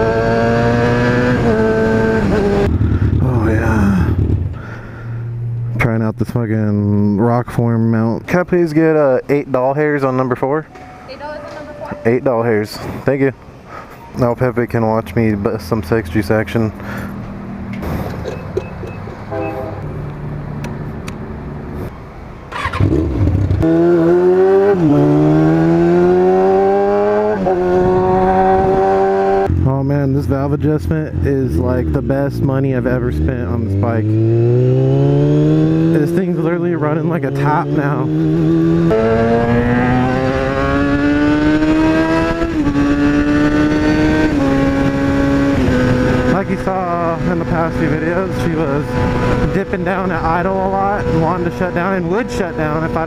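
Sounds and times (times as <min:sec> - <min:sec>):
motorcycle engine idling and revving: 0:00.0 - 0:05.9, 0:22.3 - 0:53.0.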